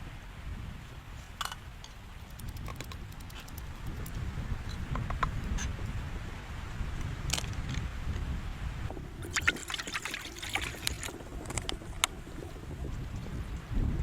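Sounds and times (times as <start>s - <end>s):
wind rumbling against microphone: 0.0s - 14.0s
sharp ticks and crackles: 1.8s - 4.2s, 9.2s - 12.6s.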